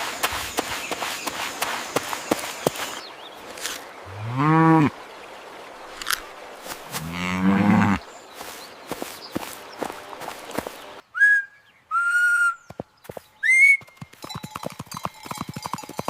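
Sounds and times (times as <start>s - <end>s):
cow mooing: 7.0s - 8.0s.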